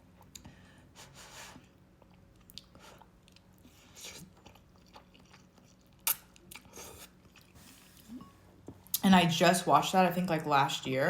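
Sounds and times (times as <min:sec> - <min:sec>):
person chewing food: 0:01.6 - 0:09.0.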